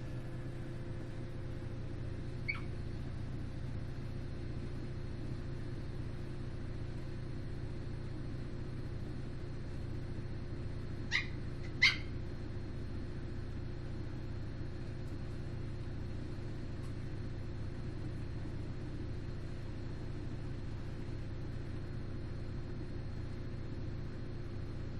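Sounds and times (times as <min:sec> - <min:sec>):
washer-dryer humming: 0:00.0 - 0:24.9
dog yipping: 0:02.4 - 0:02.8, 0:11.1 - 0:12.2.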